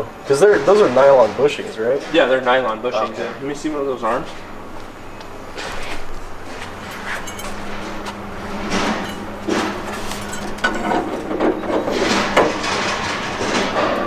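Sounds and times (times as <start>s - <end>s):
metal parts clanking: 6.4s - 14.0s.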